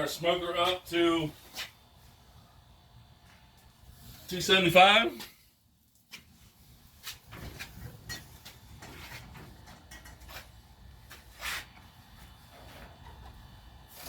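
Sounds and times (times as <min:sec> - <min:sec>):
scrape or rustle: 0:08.8 - 0:09.4, 0:10.2 - 0:11.8.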